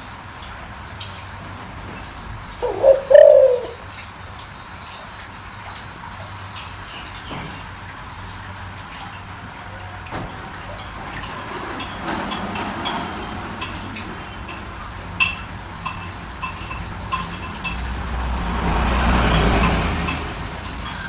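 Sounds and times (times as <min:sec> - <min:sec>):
low rumble: 0:16.6 - 0:21.0.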